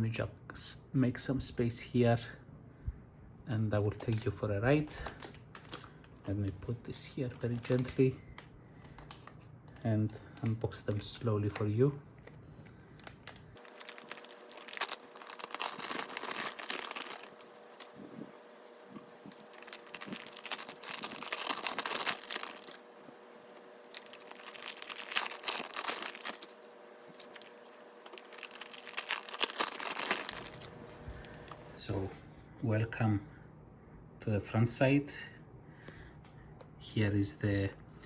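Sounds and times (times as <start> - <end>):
packaging crinkling and tearing: 4.0 - 18.3, 18.9 - 22.9, 23.8 - 31.6.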